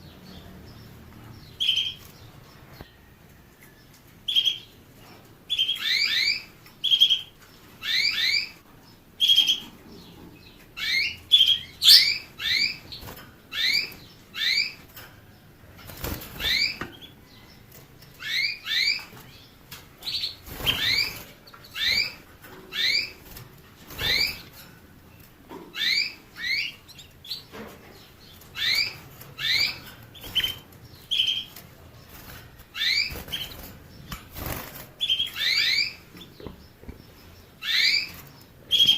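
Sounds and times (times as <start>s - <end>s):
finch chirping: 0.0s - 2.9s, 3.8s - 38.9s.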